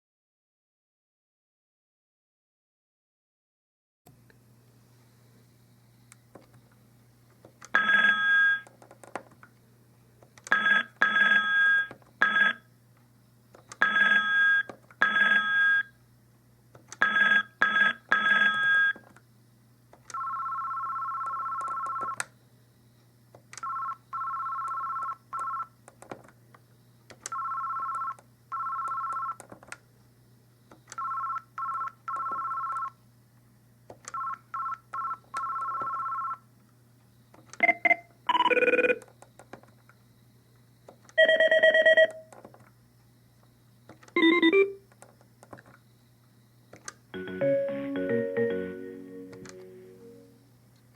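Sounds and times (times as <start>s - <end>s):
faint low hum: 4.1s - 50.9s
phone ringing with tone clusters: 20.1s - 22.2s, 23.6s - 25.7s, 27.3s - 29.4s, 31.0s - 33.0s, 34.1s - 36.4s, 37.6s - 39.0s, 41.2s - 42.2s, 44.2s - 44.8s, 47.2s - 50.4s.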